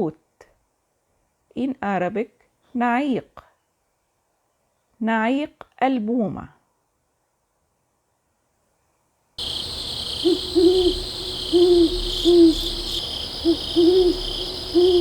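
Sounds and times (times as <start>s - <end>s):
insects chirring: 9.4s - 15.0s
owl hooting: 9.4s - 15.0s.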